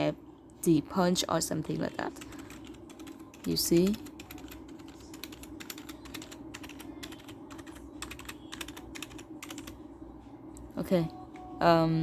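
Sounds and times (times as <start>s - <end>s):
faint low hum: 0.0s - 12.0s
keypad keys clicking: 1.6s - 9.8s.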